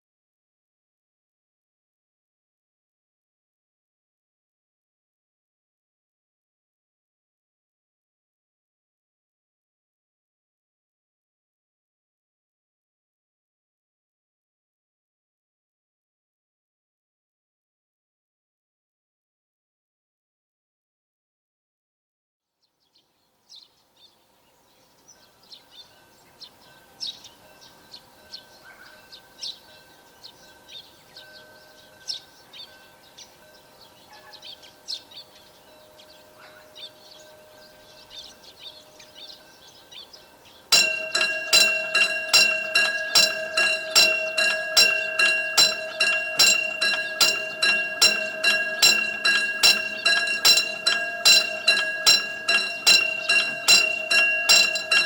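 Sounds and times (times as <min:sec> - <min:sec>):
birds chirping: 0:22.6 - 0:55.0
level-crossing warning bell: 0:25.1 - 0:55.0.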